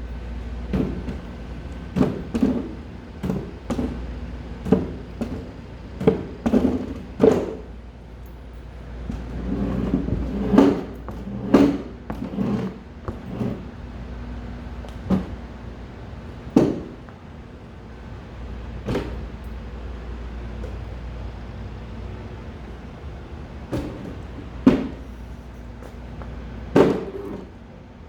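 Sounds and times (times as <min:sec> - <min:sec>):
steady low hum: 0:00.0 - 0:28.0
desk knocks and thumps: 0:00.7 - 0:01.3, 0:04.6 - 0:07.7, 0:09.1 - 0:13.6, 0:16.6 - 0:17.0, 0:26.8 - 0:27.5.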